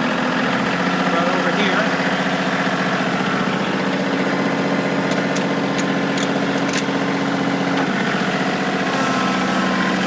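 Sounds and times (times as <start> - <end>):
tractor diesel engine running: 0.0 - 10.0.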